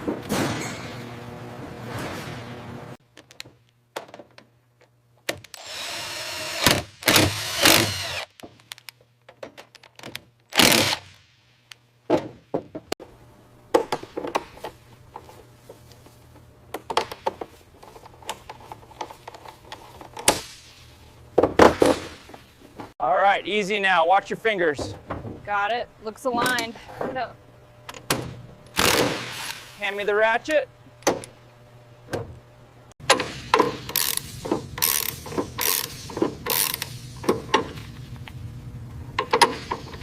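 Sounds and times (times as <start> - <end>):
power tool bursts: 5.6 - 8.4, 10.5 - 11.1, 28.7 - 29.8.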